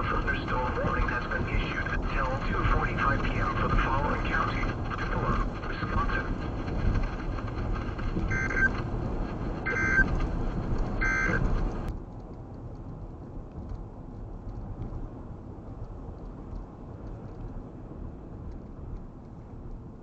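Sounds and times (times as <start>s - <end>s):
vehicle road noise: 0.0s - 20.0s
two-tone data bursts: 8.2s - 8.8s, 9.6s - 10.1s, 11.0s - 11.5s.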